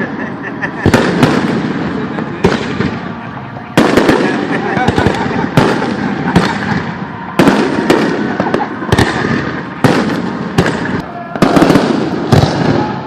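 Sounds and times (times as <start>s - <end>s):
fireworks booming: 0.0s - 13.0s.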